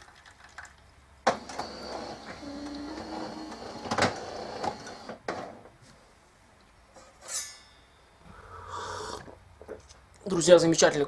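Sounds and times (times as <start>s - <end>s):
coffee machine dispensing: 1.2s - 5.7s.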